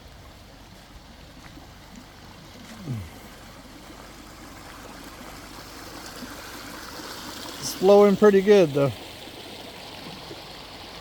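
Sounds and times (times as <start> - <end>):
creek flowing: 0.0 - 11.0.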